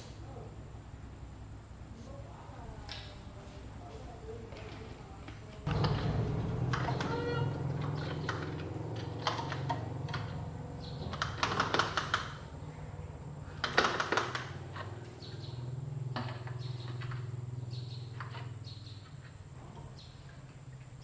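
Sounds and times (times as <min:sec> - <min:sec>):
steady low hum: 0:00.0 - 0:13.8
light clicking and clattering: 0:04.4 - 0:21.0.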